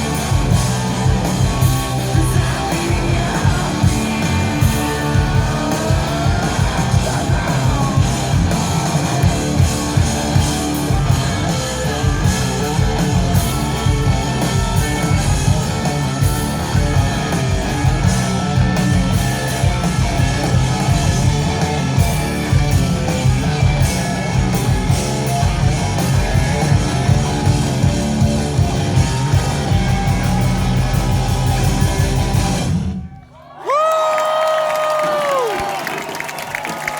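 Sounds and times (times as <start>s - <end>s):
rock band playing: 0.0s - 33.2s
person singing: 1.6s - 8.9s.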